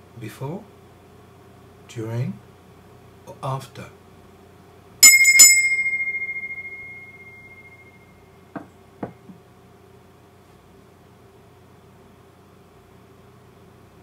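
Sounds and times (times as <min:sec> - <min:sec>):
small high-pitched bell ringing: 0:05.0 - 0:08.2
soft knocks: 0:08.6 - 0:09.4.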